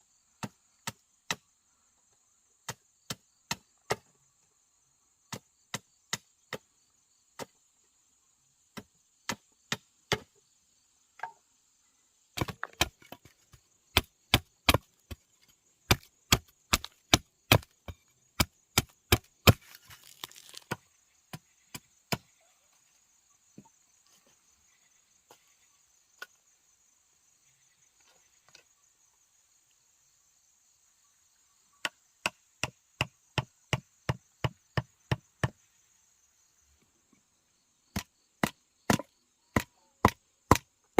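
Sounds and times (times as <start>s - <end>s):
high insect drone: 13.5s - 40.0s.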